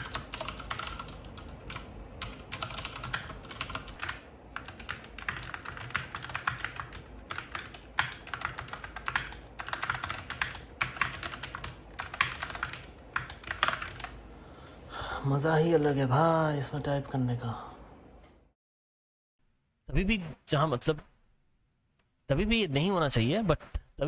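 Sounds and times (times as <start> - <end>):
fast typing on a keyboard: 0.0 - 14.2.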